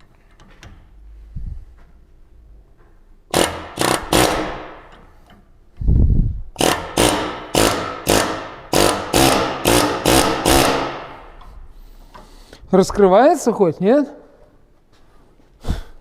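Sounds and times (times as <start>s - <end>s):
pneumatic air chisel hammering: 3.3s - 5.4s, 6.6s - 11.5s.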